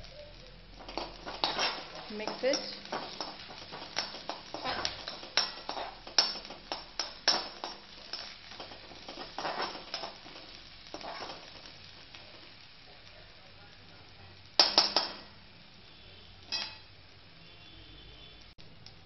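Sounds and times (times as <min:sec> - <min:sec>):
oil frying sizzle: 0:00.0 - 0:19.0
spoon scraping a pan: 0:00.8 - 0:11.7.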